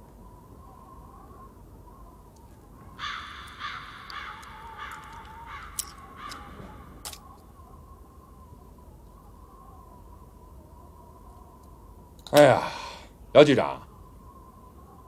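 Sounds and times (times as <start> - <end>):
crow cawing: 2.8 - 7.1.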